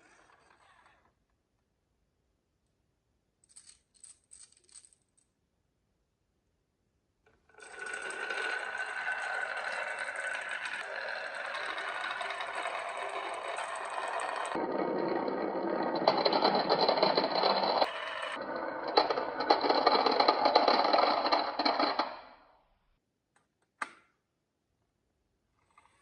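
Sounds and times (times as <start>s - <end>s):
marbles rolling and clattering on track: 7.6s - 22.4s
marbles clicking: 7.7s - 22.1s.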